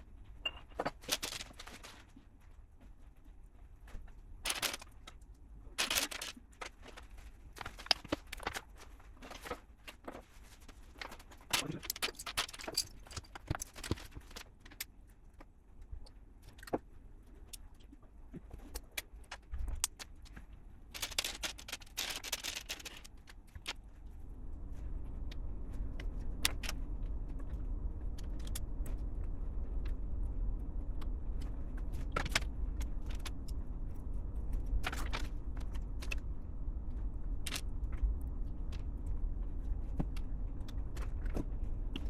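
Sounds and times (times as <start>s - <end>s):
rummaging through plastic parts: 0.3s - 15.5s, 18.2s - 24.2s, 31.9s - 33.5s, 34.5s - 36.2s
plastic bricks clicking and rattling: 0.7s - 2.0s, 4.4s - 10.2s, 11.0s - 14.9s, 18.8s - 23.8s.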